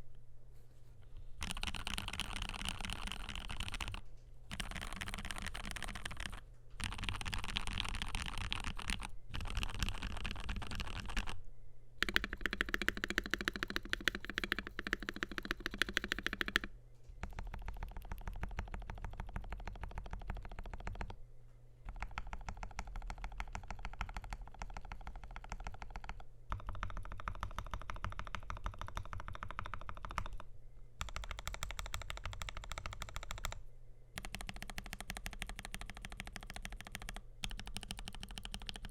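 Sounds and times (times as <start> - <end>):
mechanical keyboard typing: 1.4 - 11.4, 12.0 - 21.2, 21.9 - 30.4, 31.0 - 33.6, 34.2 - 38.9.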